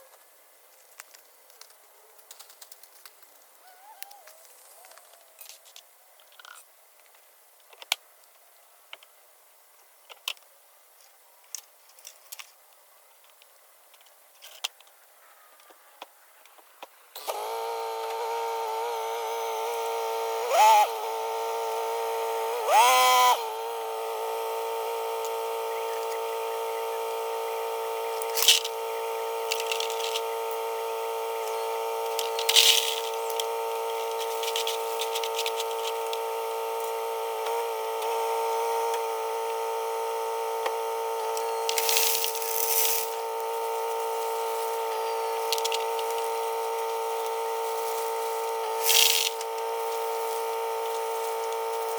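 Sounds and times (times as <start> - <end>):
hydraulic pump whine: 17.2 - 51.9.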